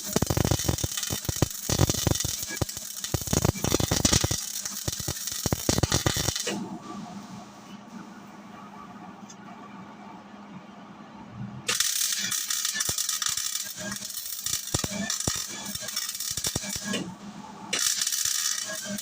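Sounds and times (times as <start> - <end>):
welding arc crackling: 0.0 - 6.6, 11.7 - 17.1, 17.7 - 19.0.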